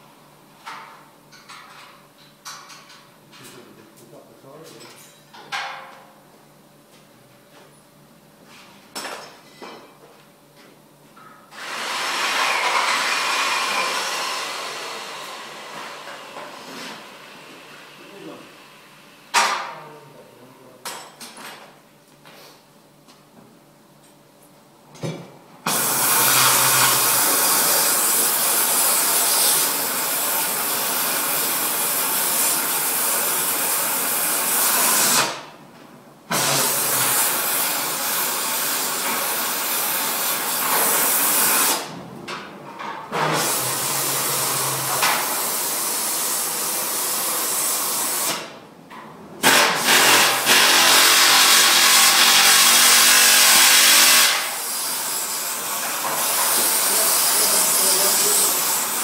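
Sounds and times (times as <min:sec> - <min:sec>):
loud hissing air tool: 0:11.5 - 0:19.2, 0:25.7 - 0:35.4, 0:36.3 - 0:41.9, 0:43.2 - 0:48.6, 0:49.4 - 0:59.0.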